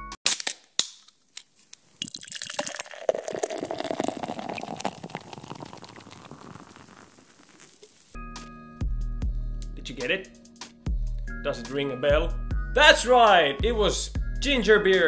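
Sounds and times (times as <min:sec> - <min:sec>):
crackling fizz: 0:00.5 - 0:08.2
drink pouring into a glass: 0:01.9 - 0:08.2.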